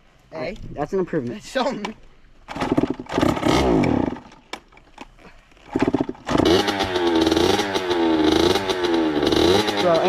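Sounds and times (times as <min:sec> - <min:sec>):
dirt bike engine sputtering: 0:02.5 - 0:04.4, 0:05.6 - 0:10.0.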